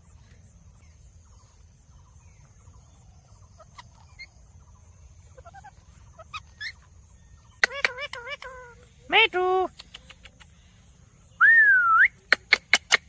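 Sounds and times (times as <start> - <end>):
parrot chirps and calls: 2.5 - 10.7, 12.1 - 13.0.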